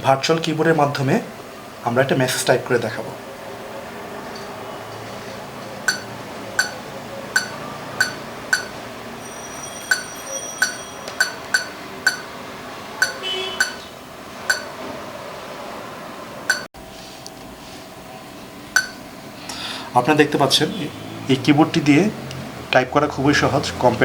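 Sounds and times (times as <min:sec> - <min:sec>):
electronic key click-beeps: 0:05.9 - 0:06.8, 0:07.4 - 0:08.8, 0:10.6 - 0:12.3, 0:13.0 - 0:13.8.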